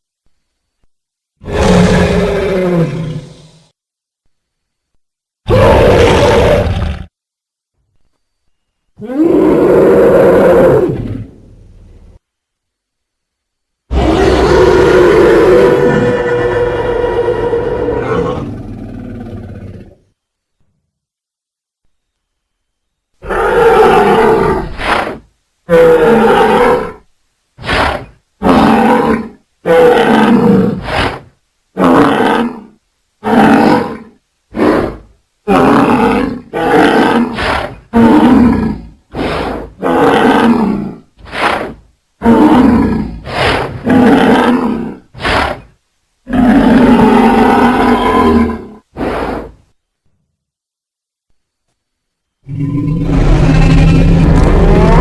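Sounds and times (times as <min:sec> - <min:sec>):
cartoon creature roars and growls: 0:01.4 - 0:03.6, 0:05.5 - 0:07.1, 0:09.0 - 0:11.4, 0:13.9 - 0:19.9, 0:25.7 - 0:27.0, 0:27.6 - 0:31.0, 0:31.8 - 0:45.7, 0:46.3 - 0:49.6, 0:52.5 - 0:55.0.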